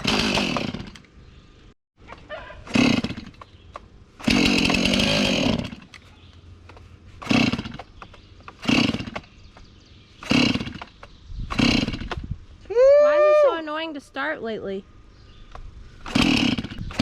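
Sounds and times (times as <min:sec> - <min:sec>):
chainsaw pull-start attempts: 0:00.0 - 0:01.0, 0:02.6 - 0:03.5, 0:04.2 - 0:06.0, 0:07.2 - 0:09.4, 0:10.2 - 0:12.3, 0:16.0 - 0:17.0.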